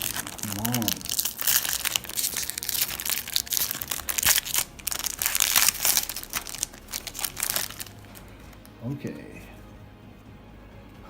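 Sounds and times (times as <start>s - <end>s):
foil wrappers crinkling: 0.0s - 8.8s.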